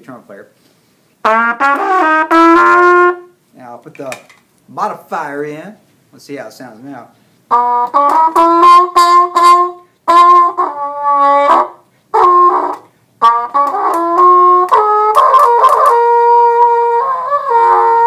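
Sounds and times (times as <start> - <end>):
muted trumpet: 1.2 - 3.4, 7.5 - 18.0.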